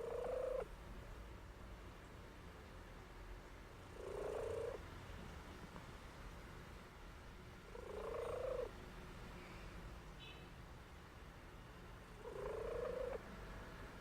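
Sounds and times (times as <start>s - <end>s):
pet snoring: 7.8s - 8.7s, 12.2s - 13.2s.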